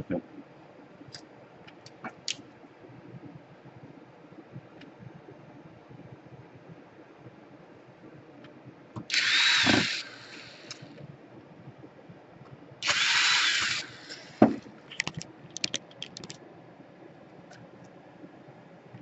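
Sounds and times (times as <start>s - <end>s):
small sharp clicks: 8.4s - 10.9s, 14.9s - 16.4s
electric screwdriver whining: 9.1s - 10.9s, 12.8s - 14.6s.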